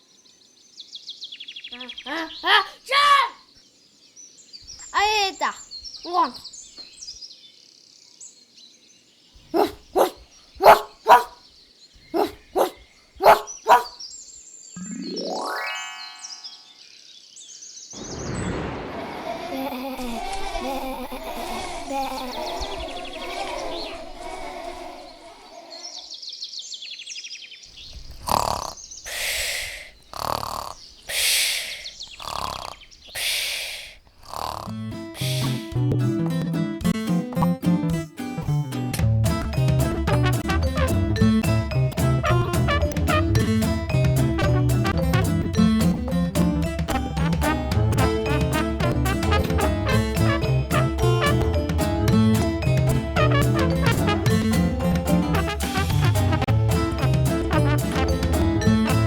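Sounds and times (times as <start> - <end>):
faint birdsong: 0.0 - 18.9, 20.6 - 35.7
dog barking: 9.4 - 11.4, 12.1 - 14.0
person imitating snoring: 28.2 - 35.7.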